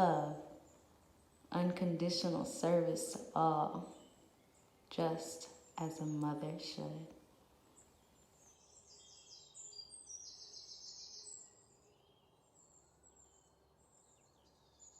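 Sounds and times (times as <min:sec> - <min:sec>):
birds chirping and trilling: 0:07.8 - 0:14.9.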